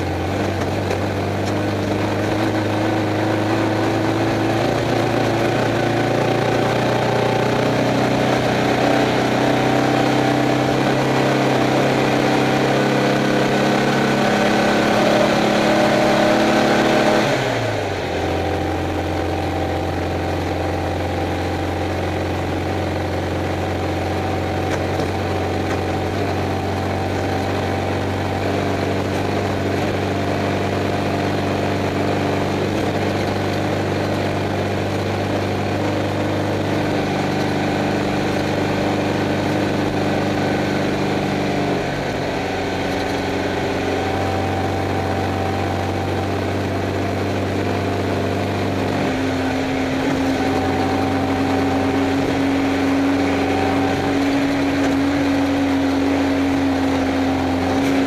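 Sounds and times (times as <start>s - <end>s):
air-cooled car engine: 0.0s - 58.0s.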